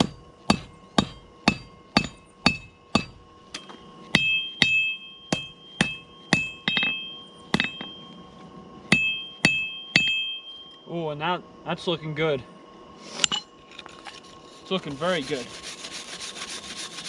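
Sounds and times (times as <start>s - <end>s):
hammer striking steel on anvil: 0.0s - 8.2s, 8.9s - 11.0s.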